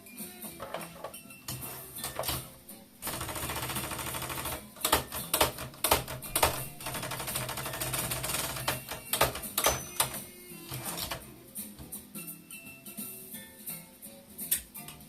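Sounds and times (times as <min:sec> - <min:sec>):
typewriter key strikes: 0:02.0 - 0:10.3
typewriter mechanism rattling: 0:02.0 - 0:11.2.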